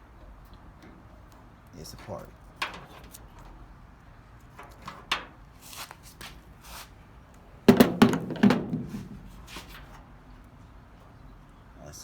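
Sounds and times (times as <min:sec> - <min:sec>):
knocks and thunks: 0:07.7 - 0:09.6.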